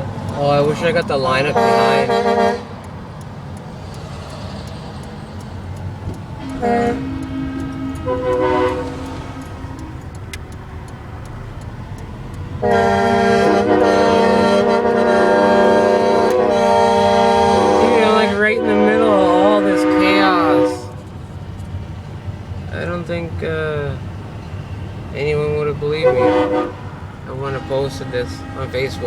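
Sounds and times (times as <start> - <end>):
low traffic rumble: 0.0 - 29.0
truck air horns: 1.3 - 2.8, 6.4 - 10.0, 12.6 - 21.0, 25.9 - 29.0.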